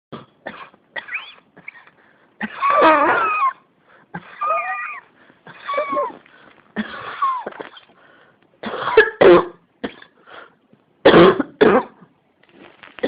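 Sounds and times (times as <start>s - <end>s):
person coughing: 0.2s - 3.6s, 4.2s - 6.2s, 6.8s - 7.9s, 8.6s - 10.2s, 11.1s - 12.0s.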